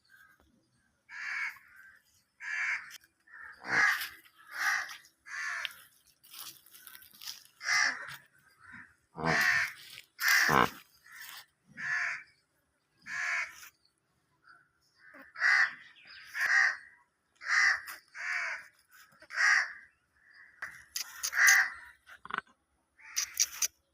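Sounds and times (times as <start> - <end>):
crow cawing: 1.1 - 5.8, 6.8 - 12.3, 13.1 - 13.6, 15.0 - 18.7, 19.3 - 21.9.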